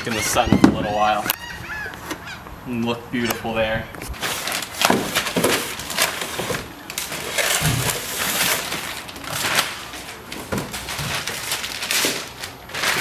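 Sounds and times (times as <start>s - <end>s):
packaging rustling and crinkling: 4.0s - 13.0s.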